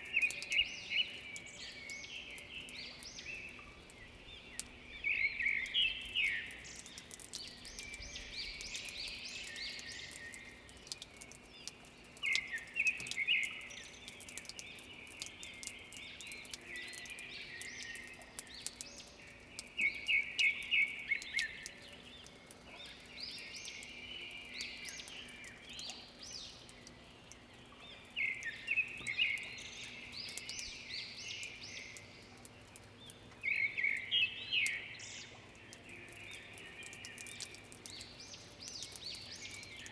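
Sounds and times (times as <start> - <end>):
bird song of rapid high notes: 27.6 - 39.9
soft bird twittering: 27.7 - 39.9.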